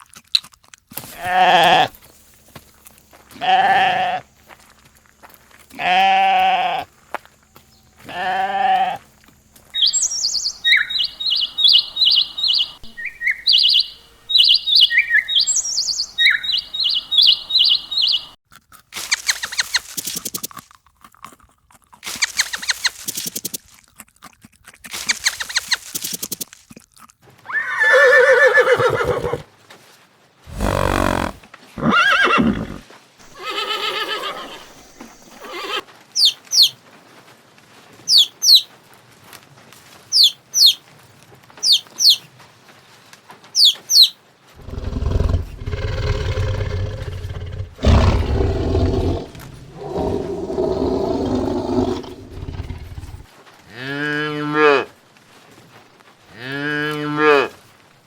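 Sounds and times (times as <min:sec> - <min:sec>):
goat bleating: 0:01.1 - 0:01.9, 0:03.3 - 0:04.2, 0:05.7 - 0:06.9, 0:08.0 - 0:09.0, 0:30.5 - 0:34.8
breathy noise blasts: 0:30.5 - 0:31.4, 0:44.6 - 0:53.3
deep low animal call: 0:30.5 - 0:33.4, 0:44.6 - 0:53.3.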